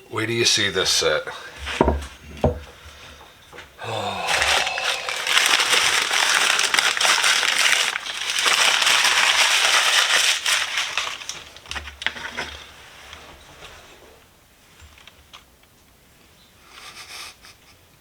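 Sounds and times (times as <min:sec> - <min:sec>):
packing material crinkling: 0:03.9 - 0:13.2.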